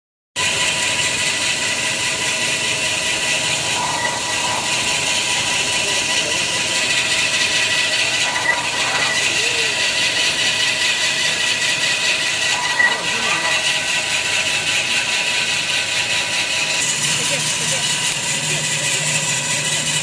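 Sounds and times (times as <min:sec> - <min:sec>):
band saw machine running: 0:00.4 - 0:20.0.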